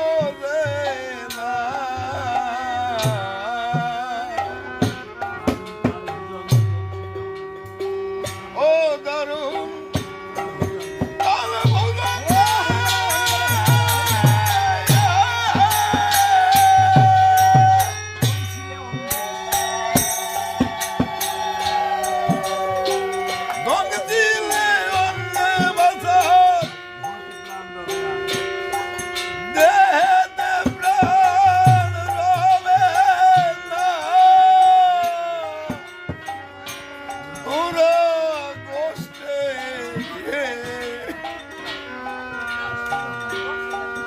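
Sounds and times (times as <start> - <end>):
wavering melody line: 9.5 - 34.1
shaken hand percussion: 9.5 - 44.0.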